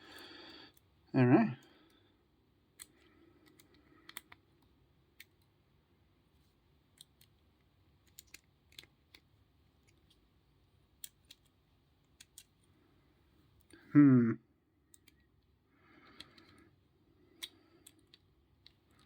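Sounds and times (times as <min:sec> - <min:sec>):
padlock and picking tools clicking: 0:02.7 - 0:05.4, 0:08.0 - 0:10.2, 0:10.9 - 0:12.7, 0:17.3 - 0:19.0.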